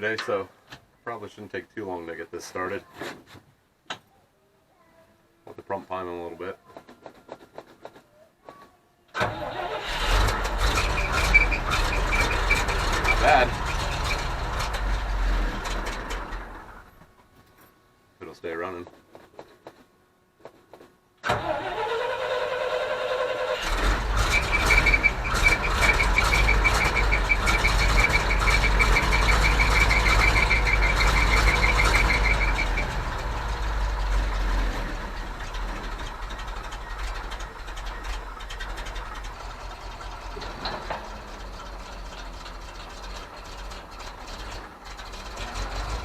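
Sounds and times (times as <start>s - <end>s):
truck engine cranking and running: 9.2s - 17.0s, 21.2s - 46.0s.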